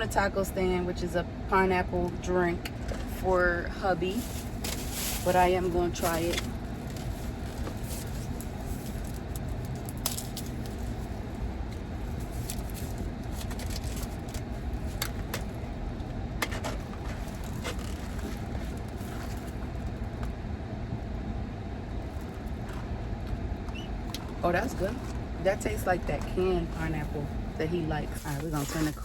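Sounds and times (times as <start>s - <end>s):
car engine idling: 0.1s - 21.2s, 21.8s - 29.0s.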